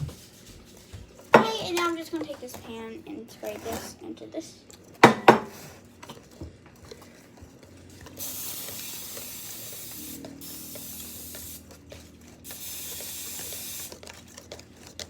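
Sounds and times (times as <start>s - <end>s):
aerosol oil spray hissing: 8.2s - 11.7s, 12.4s - 13.9s.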